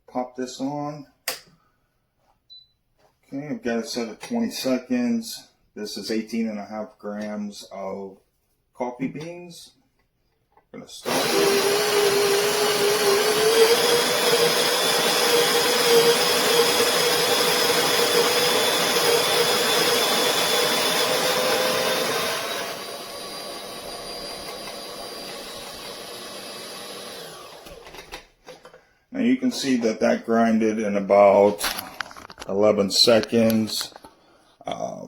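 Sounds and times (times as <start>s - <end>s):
coffee grinder motor whine: 11.0s - 28.1s.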